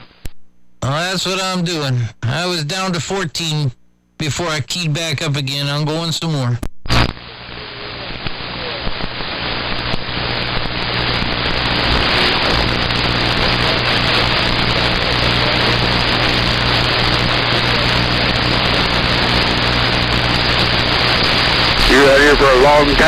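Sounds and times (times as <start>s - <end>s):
radio static hiss: 0.0s - 23.0s
low hum: 19.1s - 23.0s.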